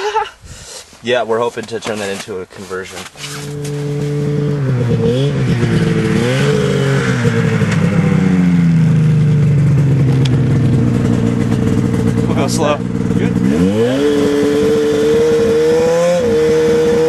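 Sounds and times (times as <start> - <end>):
motor engine running: 3.2 - 17.0.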